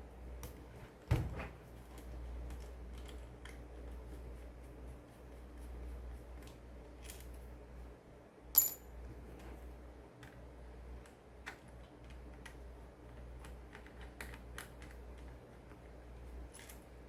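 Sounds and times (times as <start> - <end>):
brief metallic ring: 8.6 - 8.9.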